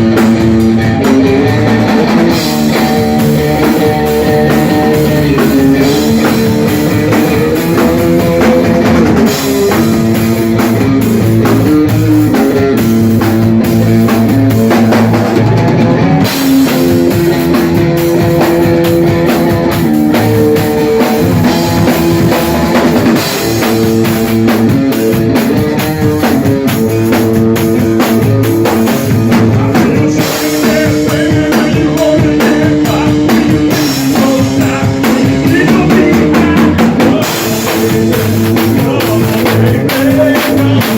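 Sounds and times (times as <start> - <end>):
live rock band playing: 0.0 - 40.9.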